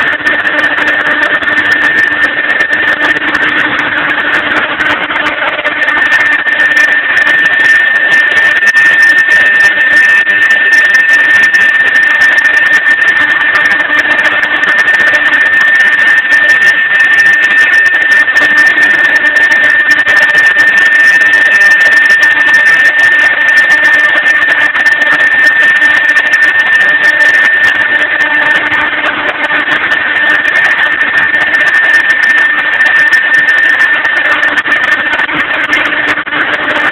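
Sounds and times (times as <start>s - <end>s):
loud machine noise: 0.0s - 36.9s
router high-pitched whine: 0.0s - 36.9s.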